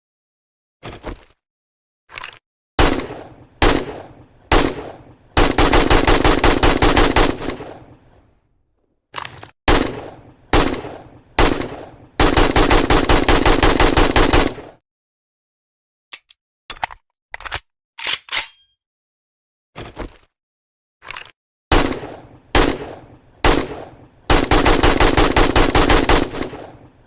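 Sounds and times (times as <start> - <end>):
automatic gunfire bursts: 2.8 - 7.8, 9.7 - 14.7, 21.7 - 26.8
rifle single shots: 21.7 - 26.9.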